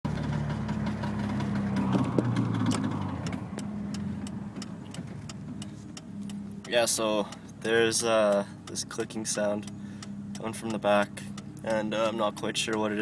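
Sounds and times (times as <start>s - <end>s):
car engine running: 0.0s - 13.0s
sharp clicking from car: 0.1s - 13.0s.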